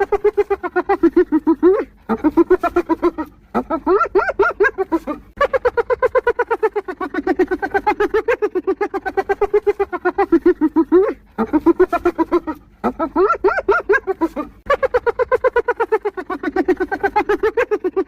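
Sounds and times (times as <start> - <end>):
hyena giggling: 0.0 - 18.0.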